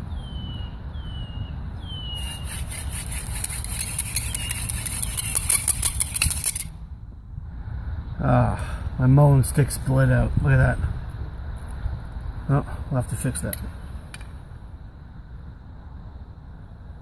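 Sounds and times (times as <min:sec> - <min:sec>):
bird whistled call: 0:00.1 - 0:02.7, 0:04.0 - 0:05.8
steady low rumble: 0:00.8 - 0:17.0
hand drill scraping hiss: 0:02.2 - 0:06.7.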